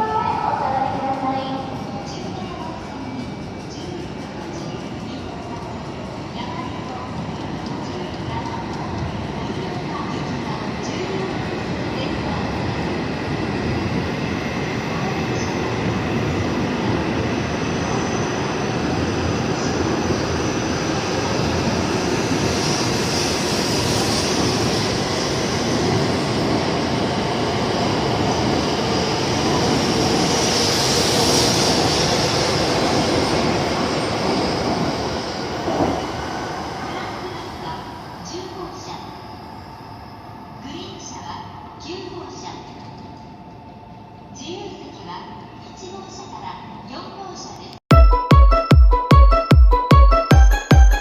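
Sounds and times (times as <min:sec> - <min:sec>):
train rushing past: 0:00.0 - 0:40.2.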